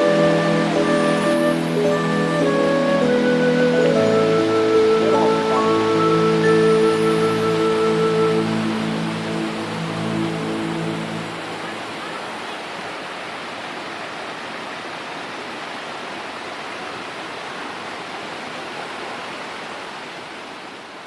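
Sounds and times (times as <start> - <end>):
background music: 0.0 - 11.8
waterfall rushing: 0.0 - 21.0.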